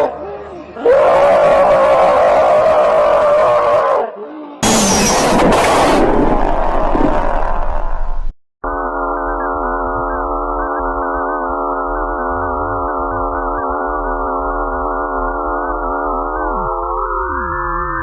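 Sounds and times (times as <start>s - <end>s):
synthesized drone: 4.6s - 18.0s.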